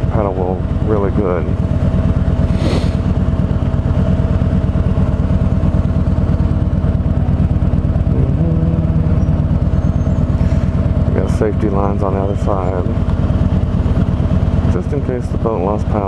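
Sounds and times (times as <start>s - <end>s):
engine idling: 0.0s - 16.0s
humming tone stepping up: 8.1s - 13.0s.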